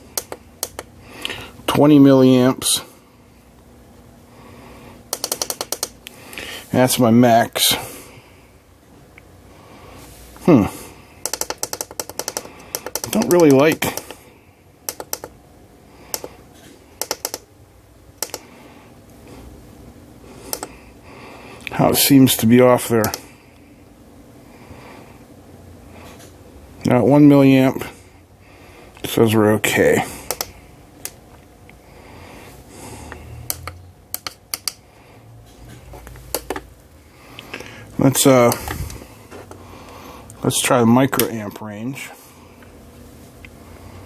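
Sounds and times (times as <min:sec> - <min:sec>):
sharp control clicks: 0:00.0 - 0:00.9, 0:05.1 - 0:06.2, 0:11.2 - 0:14.2, 0:14.8 - 0:15.4, 0:16.1 - 0:16.4, 0:17.0 - 0:17.5, 0:18.2 - 0:18.5, 0:20.5 - 0:20.8, 0:23.0 - 0:23.3, 0:30.2 - 0:31.2, 0:33.1 - 0:34.8, 0:36.1 - 0:36.7, 0:38.4 - 0:39.0
test gear clicks: 0:00.1 - 0:00.9, 0:05.1 - 0:06.0, 0:11.2 - 0:14.2.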